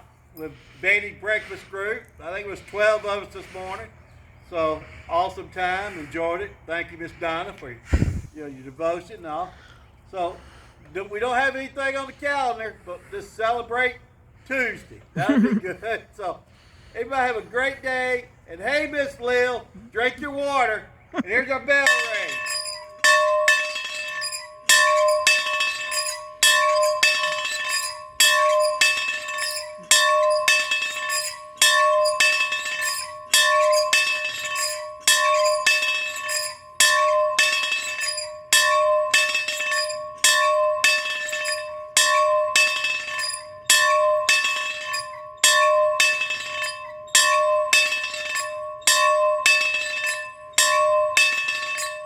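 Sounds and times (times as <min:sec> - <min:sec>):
bell ringing: 0:21.8 - 0:52.0.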